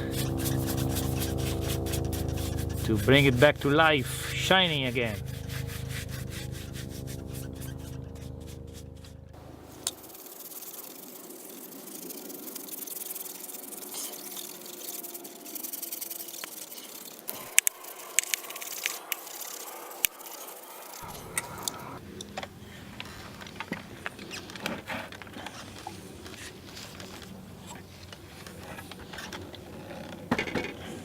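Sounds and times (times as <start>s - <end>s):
brush scrubbing chainsaw: 0.0s - 21.5s.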